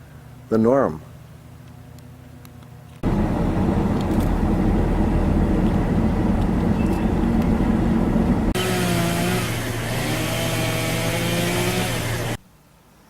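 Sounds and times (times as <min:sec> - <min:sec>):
engine running: 0:03.0 - 0:12.4.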